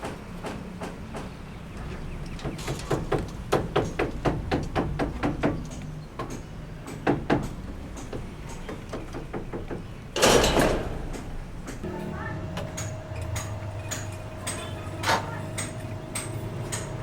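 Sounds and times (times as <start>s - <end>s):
sharp knocks and taps: 0.0s - 10.0s.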